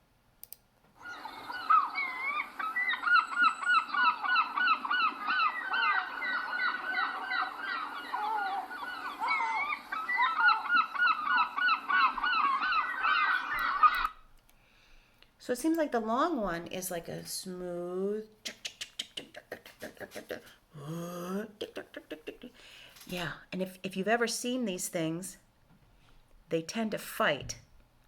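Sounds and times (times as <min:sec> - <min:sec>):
gulls calling: 0:01.0 - 0:14.2.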